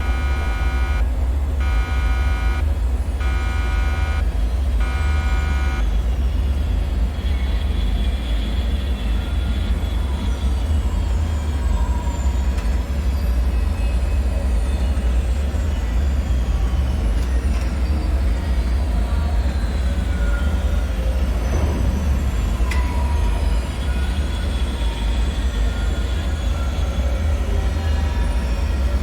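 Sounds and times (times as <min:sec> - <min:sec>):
buzzing alarm pulses: 0:00.0 - 0:06.2
deep steady rumble: 0:00.0 - 0:08.3.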